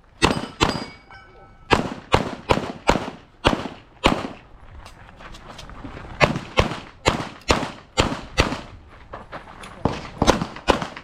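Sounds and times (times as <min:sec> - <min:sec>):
handgun shots with echo: 0:00.2 - 0:01.0.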